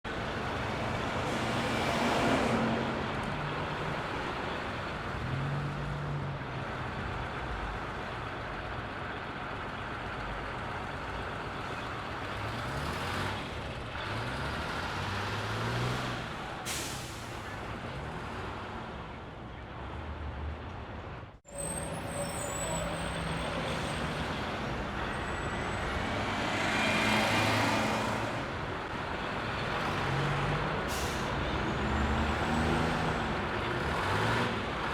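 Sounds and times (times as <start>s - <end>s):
diesel engines idling and moving: 0.0s - 34.9s
air brakes hissing: 16.6s - 17.6s, 30.9s - 31.5s.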